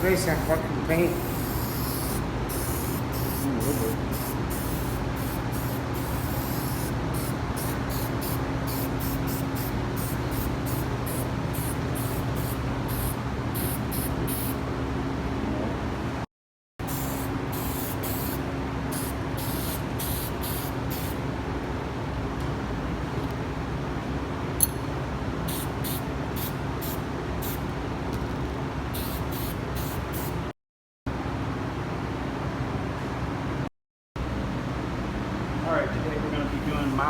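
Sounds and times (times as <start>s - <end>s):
steady low hum: 0.0s - 16.2s
spray paint can bursts: 1.2s - 14.5s, 16.9s - 18.4s, 19.0s - 21.2s
sharp click: 24.6s - 24.8s.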